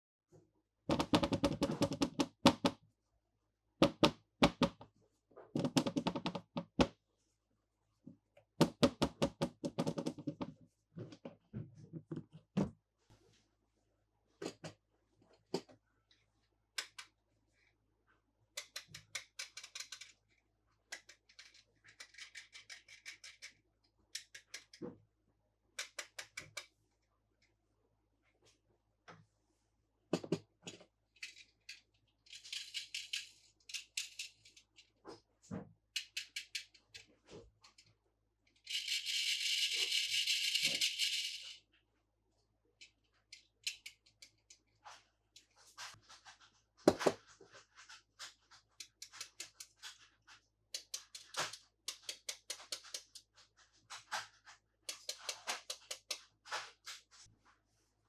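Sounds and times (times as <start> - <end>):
plastic toys clicking and tapping: 16.8 - 17.1, 18.6 - 24.8, 25.8 - 26.8, 30.2 - 34.9, 35.9 - 37.9, 38.6 - 41.6, 42.8 - 44.7, 48.2 - 50.1, 50.8 - 56.4.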